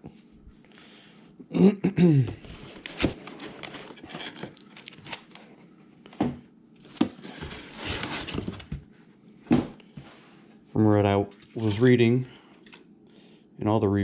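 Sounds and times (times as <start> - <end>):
packaging rustling and crinkling: 2.5 - 5.5, 6.8 - 8.8.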